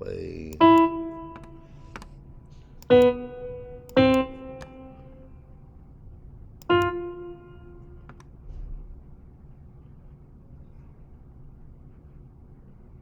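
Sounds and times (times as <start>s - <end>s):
software piano notes: 0.0s - 5.6s, 6.6s - 8.2s.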